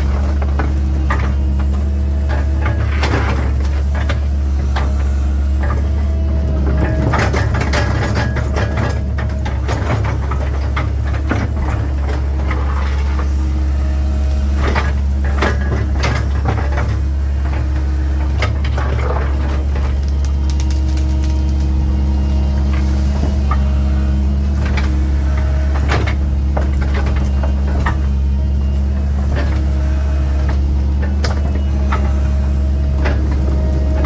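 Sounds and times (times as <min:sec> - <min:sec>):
excavator diesel engine running: 0:00.0 - 0:34.0
sharp cracks and knocks: 0:19.8 - 0:21.8.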